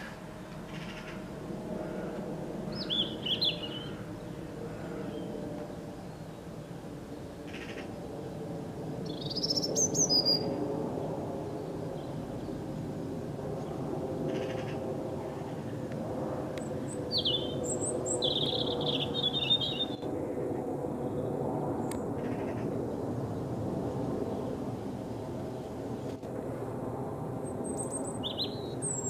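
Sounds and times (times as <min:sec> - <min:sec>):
robin singing: 0:02.7 - 0:05.3, 0:09.0 - 0:10.6, 0:16.9 - 0:20.0, 0:27.6 - 0:29.0.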